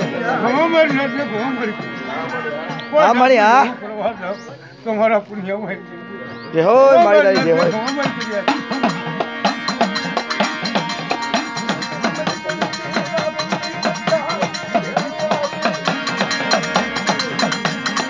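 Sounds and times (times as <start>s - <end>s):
devotional music: 0.0s - 18.0s
sustained tones: 0.0s - 18.0s
drums and clattering percussion: 7.0s - 18.0s.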